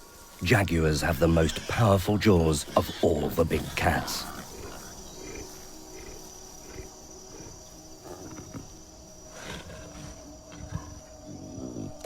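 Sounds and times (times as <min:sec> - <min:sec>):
high insect drone: 0:00.0 - 0:12.0
wild animal growling and grunting: 0:02.6 - 0:12.0.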